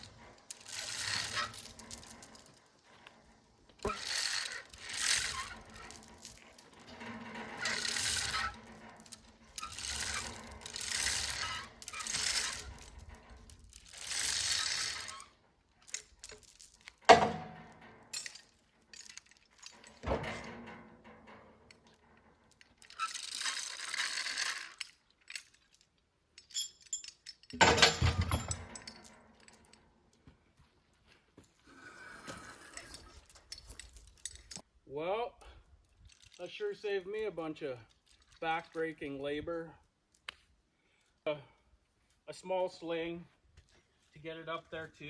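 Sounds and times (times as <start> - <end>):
metal clanking: 0.0 - 15.2, 15.9 - 23.0, 26.4 - 29.8.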